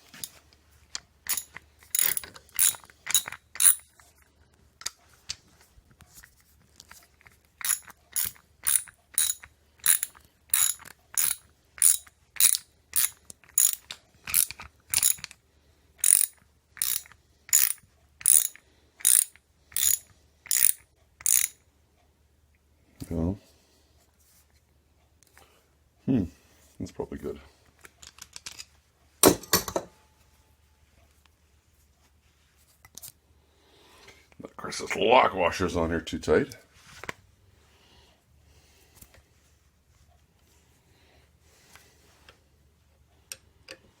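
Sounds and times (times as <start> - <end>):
ratchet wrench clicking: 1.3 - 3.9, 7.6 - 15.3, 16.0 - 21.6.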